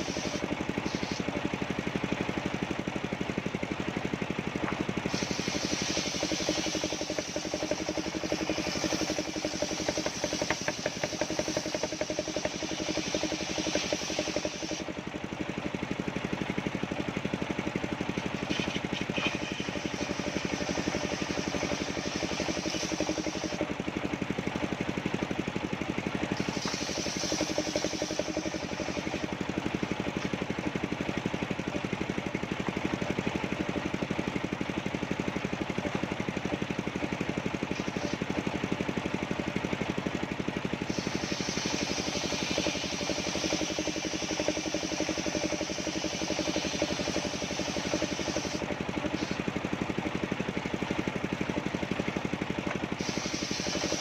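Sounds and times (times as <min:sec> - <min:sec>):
saw cutting through wood: 0:00.0 - 0:01.3, 0:05.0 - 0:14.9, 0:18.2 - 0:23.7, 0:26.3 - 0:30.4, 0:40.8 - 0:49.5, 0:52.9 - 0:54.0
sawmill engine droning: 0:00.0 - 0:54.0.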